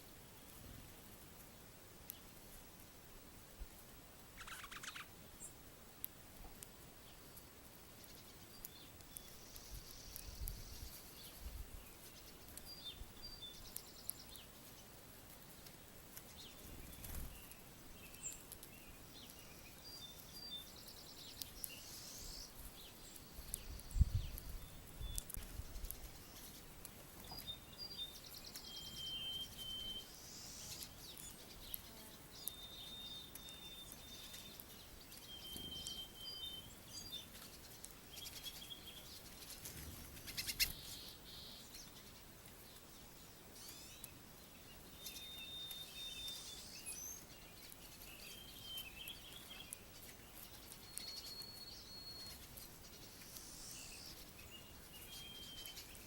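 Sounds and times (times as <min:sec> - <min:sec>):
songbirds chirping: 0:00.0 - 0:56.0
whistled bird notes: 0:27.3 - 0:31.1, 0:32.3 - 0:37.2, 0:44.9 - 0:47.4, 0:50.8 - 0:52.4, 0:53.1 - 0:56.0.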